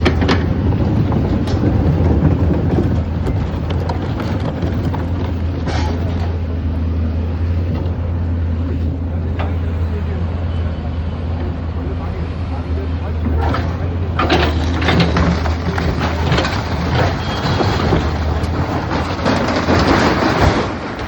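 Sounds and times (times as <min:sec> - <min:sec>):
vehicle engine rumbling: 0:00.0 - 0:21.0.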